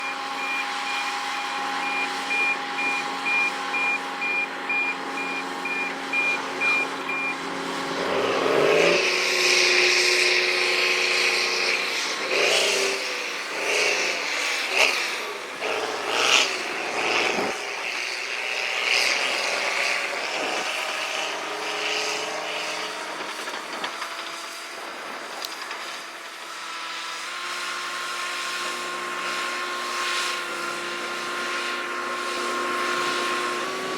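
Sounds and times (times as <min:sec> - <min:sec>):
rapid beeping alarm: 0:00.0 - 0:07.4
bulldozer diesel engine running: 0:00.0 - 0:33.9.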